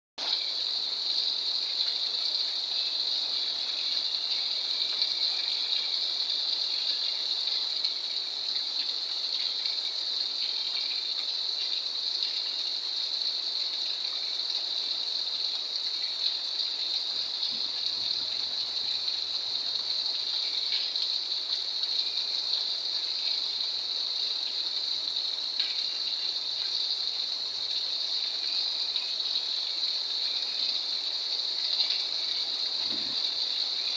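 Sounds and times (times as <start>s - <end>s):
steady rain falling: 0.2s - 33.9s.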